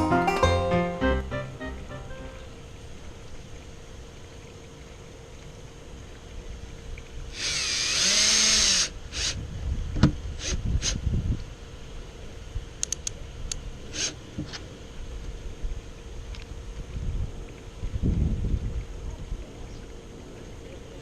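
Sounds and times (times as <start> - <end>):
power drill driving a screw: 7.4 - 9.4.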